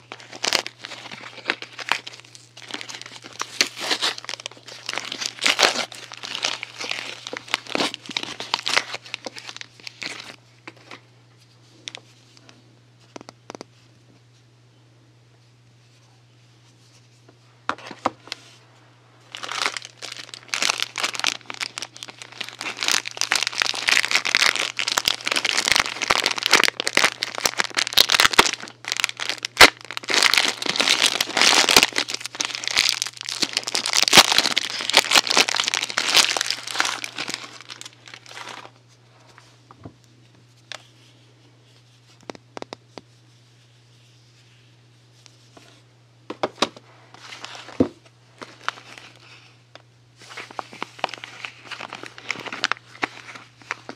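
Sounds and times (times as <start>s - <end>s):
packaging wrap crinkling: 0.0s - 11.0s, 19.2s - 39.4s, 46.5s - 49.6s, 50.2s - 53.9s
faint steady hum: 0.0s - 53.9s.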